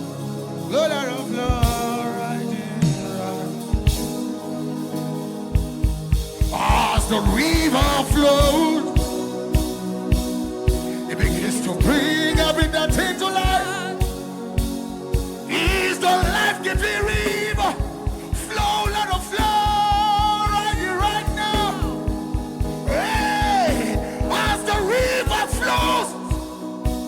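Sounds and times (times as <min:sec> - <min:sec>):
fast low drum beat: 0:01.5 - 0:02.0, 0:03.7 - 0:04.2, 0:05.6 - 0:27.0
person singing: 0:06.4 - 0:09.8, 0:10.9 - 0:14.7, 0:15.5 - 0:27.0.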